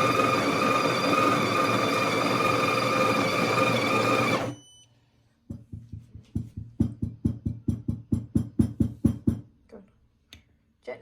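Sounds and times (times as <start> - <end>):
coffee grinder whirring: 0.0 - 4.5.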